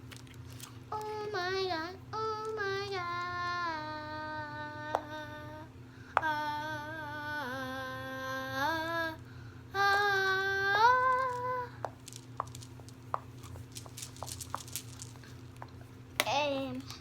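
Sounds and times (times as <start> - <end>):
girl singing long notes: 0.9 - 12.0.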